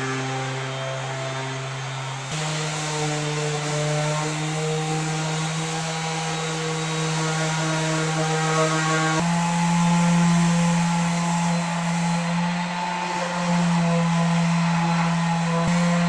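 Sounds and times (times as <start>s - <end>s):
sander motor hum: 0.0s - 16.0s
sanding hiss on wood: 0.0s - 16.0s.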